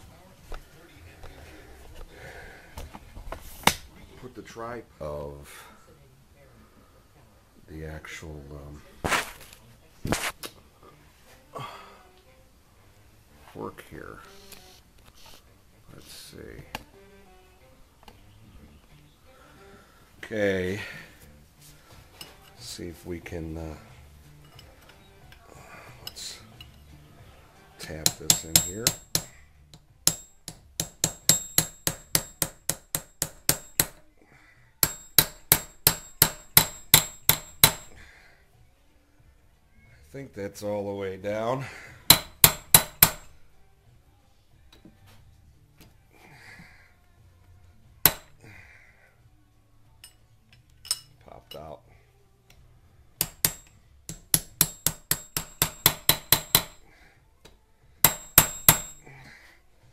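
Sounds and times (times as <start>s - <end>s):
hammer tapping steel: 28.0s - 34.0s, 34.8s - 38.0s, 42.1s - 43.3s, 48.1s - 48.4s, 53.2s - 56.8s, 58.0s - 59.0s.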